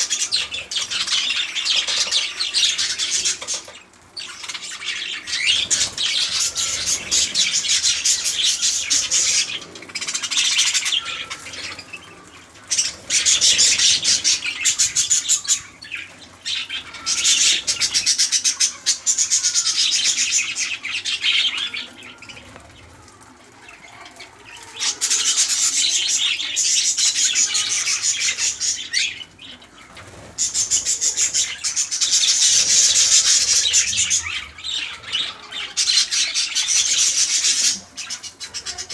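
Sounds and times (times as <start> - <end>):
budgerigars chattering: 0.0 - 21.8, 30.0 - 38.9.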